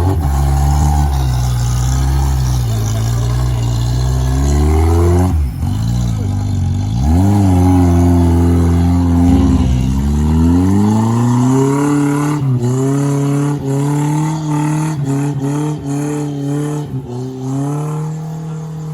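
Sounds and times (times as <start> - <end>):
car engine revving hard: 0.0 - 18.9.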